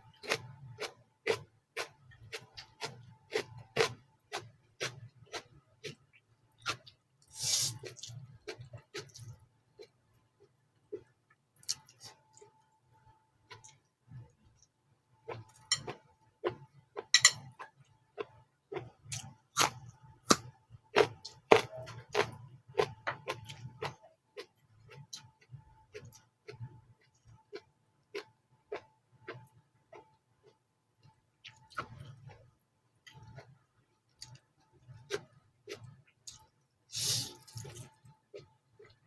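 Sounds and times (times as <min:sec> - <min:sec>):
chewing and mouth clicks: 0:33.1 - 0:39.0.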